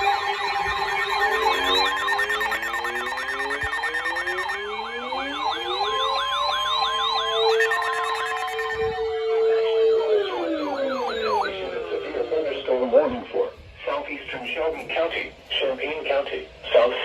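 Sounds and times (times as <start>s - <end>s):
fast sweeping siren: 0.0s - 12.6s
slow rising siren tones: 0.0s - 12.9s.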